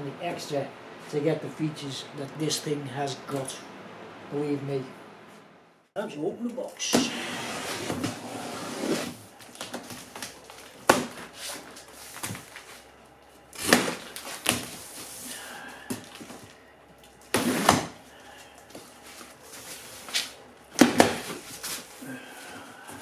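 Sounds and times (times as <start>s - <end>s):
cardboard scraping: 6.9s - 9.2s, 17.3s - 18.0s.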